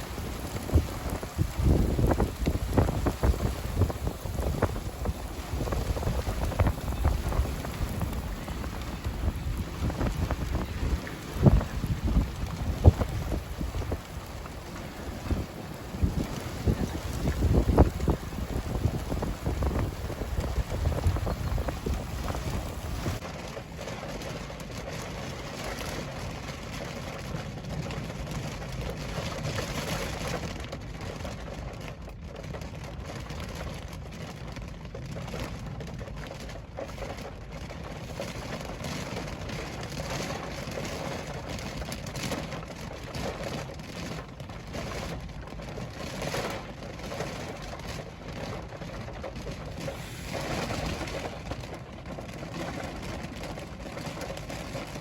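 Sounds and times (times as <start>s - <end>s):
heavy rain hissing: 0.0s - 23.2s, 49.8s - 51.5s.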